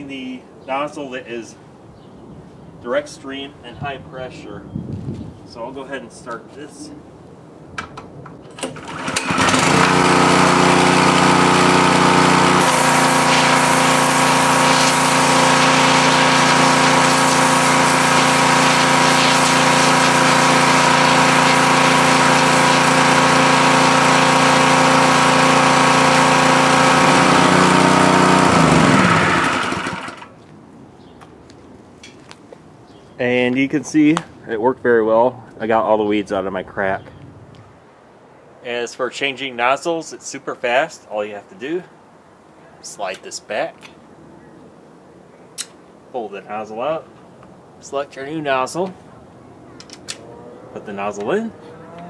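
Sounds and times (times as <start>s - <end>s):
pressure washer engine running: 8.8s - 30.4s
high-pressure water spray: 9.2s - 30.2s.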